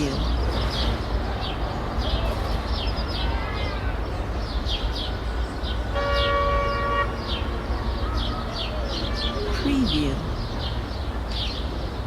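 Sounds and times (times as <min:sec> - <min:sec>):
distant traffic rumble: 0:00.0 - 0:03.2
distant vehicle horn: 0:05.9 - 0:07.3.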